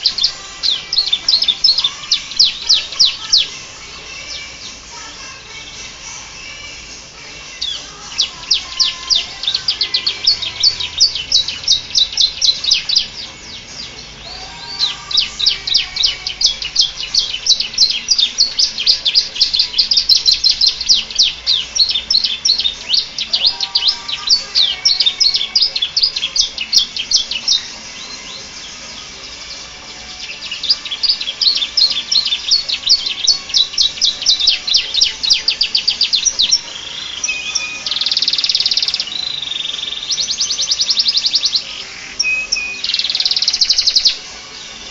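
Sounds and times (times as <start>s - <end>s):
canary singing rapid high notes: 0.0s - 44.9s.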